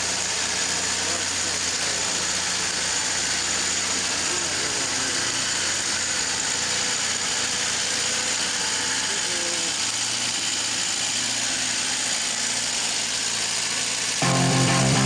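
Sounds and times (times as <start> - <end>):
car engine running: 0.0 - 15.0
music: 14.2 - 15.0.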